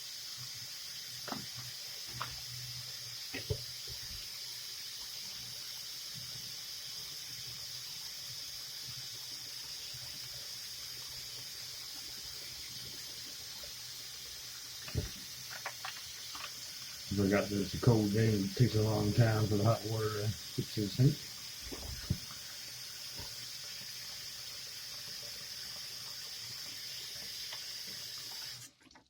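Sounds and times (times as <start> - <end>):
sink tap running: 0.0 - 29.0.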